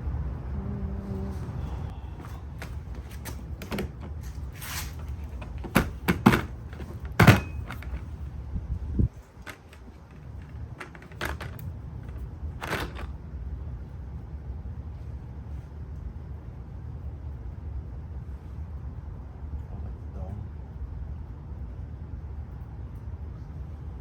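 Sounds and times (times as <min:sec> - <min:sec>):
low steady rumble: 0:00.0 - 0:24.0
hand tools clicking and knocking: 0:02.2 - 0:08.1, 0:09.4 - 0:13.1.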